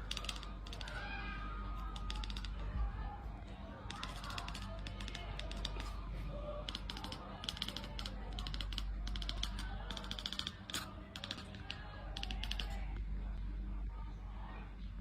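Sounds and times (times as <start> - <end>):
rapid clicking and tapping: 0.0 - 1.2, 1.8 - 2.8, 3.8 - 13.0.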